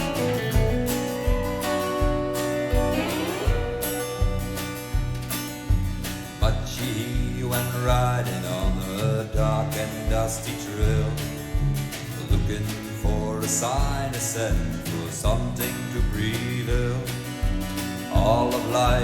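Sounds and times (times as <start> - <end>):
country band playing: 0.0 - 19.0.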